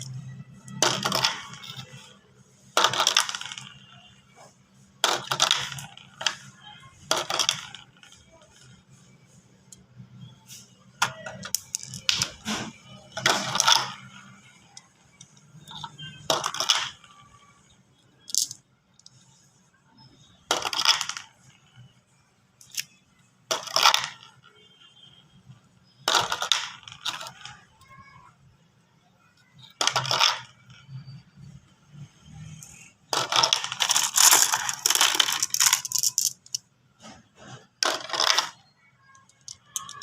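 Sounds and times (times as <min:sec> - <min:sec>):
marbles rattling down plastic track: 0:00.0 - 0:03.9, 0:05.0 - 0:08.8, 0:10.8 - 0:17.1, 0:18.2 - 0:19.2, 0:20.4 - 0:21.6, 0:23.4 - 0:24.5, 0:26.0 - 0:28.0, 0:29.6 - 0:36.7, 0:37.8 - 0:38.6, 0:39.2 - 0:40.0.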